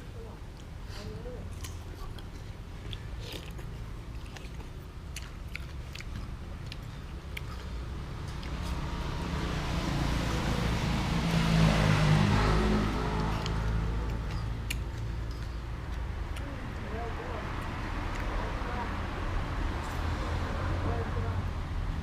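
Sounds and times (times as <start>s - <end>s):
low traffic rumble: 0.0s - 22.0s
vehicle passing close by: 6.8s - 15.3s.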